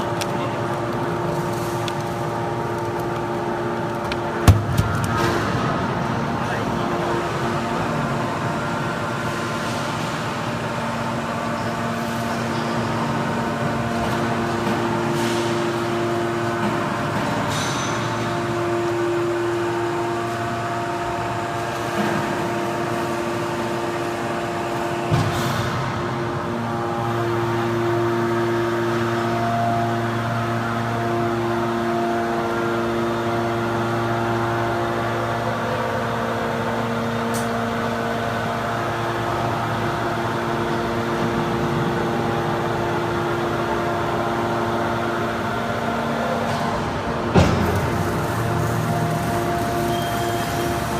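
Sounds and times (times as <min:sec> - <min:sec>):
baler machine hum: 0:00.0 - 0:50.9
machine clunk: 0:04.0 - 0:05.8.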